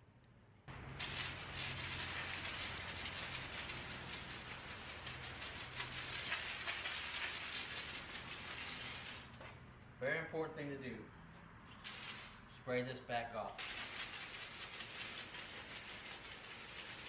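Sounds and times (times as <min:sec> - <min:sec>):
pump motor humming: 0:00.7 - 0:09.4, 0:13.6 - 0:17.0
pressure washer spray hissing: 0:00.9 - 0:09.4, 0:11.8 - 0:12.4, 0:13.6 - 0:17.0.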